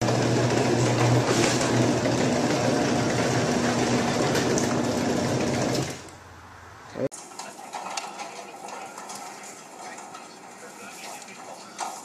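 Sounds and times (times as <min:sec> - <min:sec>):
garage door rattling: 0:00.0 - 0:06.1, 0:07.2 - 0:10.6
garage door opener motor hum: 0:00.0 - 0:06.2, 0:07.2 - 0:10.6.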